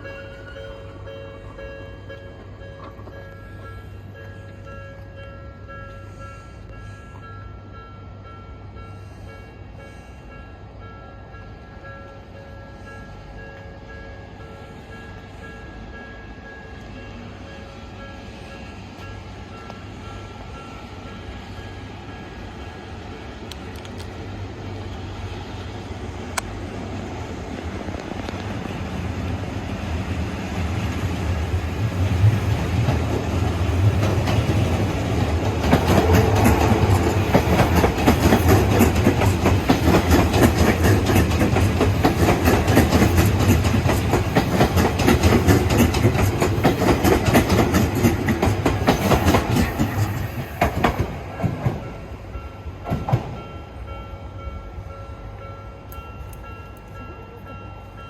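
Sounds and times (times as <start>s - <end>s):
electric train passing: 0.0s - 58.0s
wheels clattering over rail joints: 30.8s - 52.0s.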